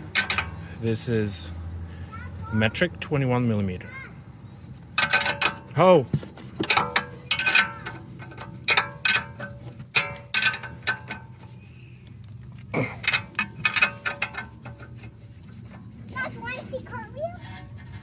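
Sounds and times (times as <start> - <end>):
metal hand tools clinking: 0.0 - 0.6, 5.0 - 5.8, 6.6 - 11.5, 12.8 - 15.8.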